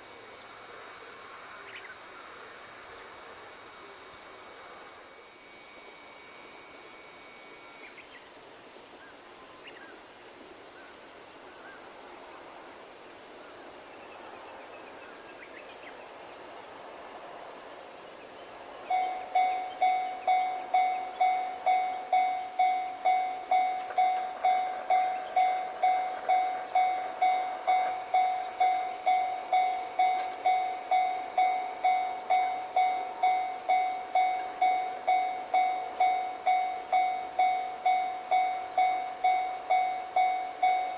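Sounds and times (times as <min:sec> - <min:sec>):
faint steady hiss: 0:00.0 - 0:40.9
level crossing warning bell clanging: 0:18.9 - 0:40.9.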